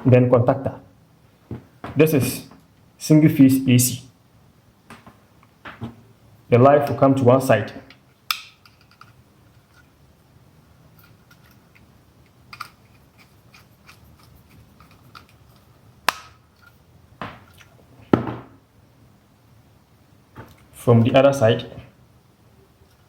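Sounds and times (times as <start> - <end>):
faint room hiss: 0.0 - 23.0
tool clicks and wire snips: 8.3 - 9.0.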